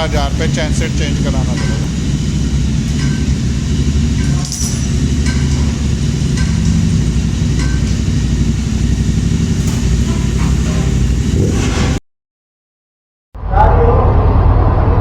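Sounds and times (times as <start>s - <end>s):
motorcycle engine idling: 0.0s - 11.4s.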